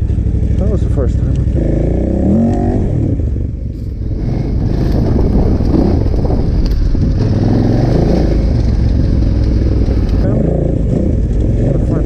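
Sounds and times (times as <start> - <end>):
motorcycle engine running: 0.0 - 12.0.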